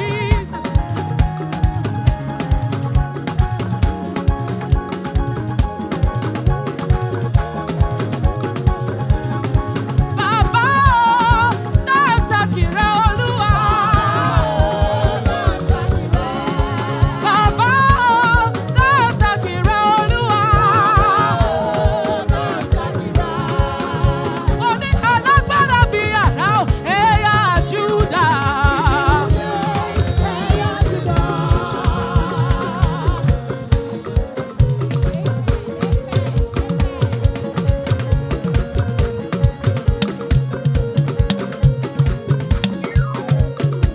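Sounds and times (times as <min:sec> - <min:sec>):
choir singing with vibrato: 0:00.0 - 0:02.4, 0:10.2 - 0:34.5
band with fast drum beat: 0:00.0 - 0:43.9.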